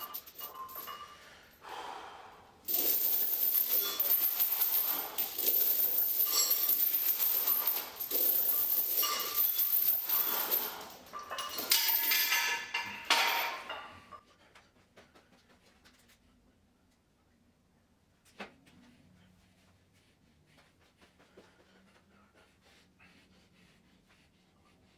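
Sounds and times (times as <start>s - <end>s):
metal gym equipment clinking: 0.0s - 1.2s, 2.7s - 14.2s.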